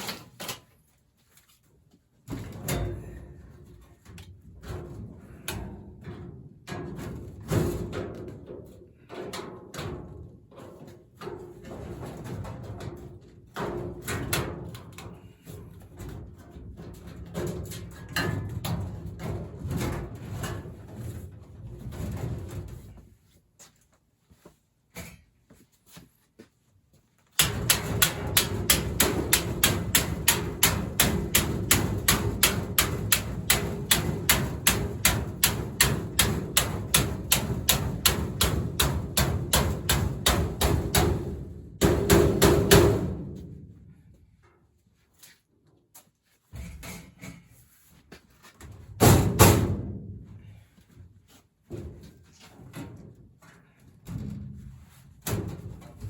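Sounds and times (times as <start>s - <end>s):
work knocks and clatter: 2.2s - 23.2s, 27.2s - 44.7s, 46.5s - 50.4s, 51.6s - 56.0s
rapid hammer strikes: 27.4s - 43.1s.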